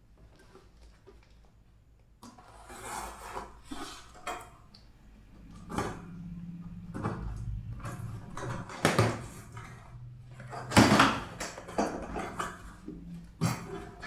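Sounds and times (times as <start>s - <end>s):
low steady hum: 4.4s - 14.0s
knocks and scrapes: 5.4s - 14.0s.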